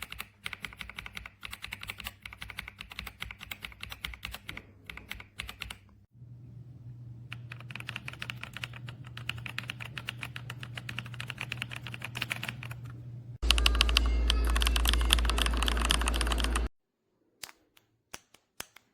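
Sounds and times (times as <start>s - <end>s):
mechanical keyboard typing: 0.0s - 5.9s, 7.3s - 16.7s
low hum: 6.1s - 9.4s, 12.0s - 16.7s.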